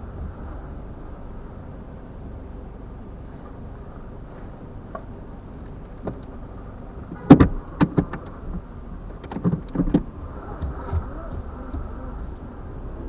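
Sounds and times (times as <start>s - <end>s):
car interior rumble: 0.0s - 13.0s
sharp knocks and clatters: 4.9s - 12.0s.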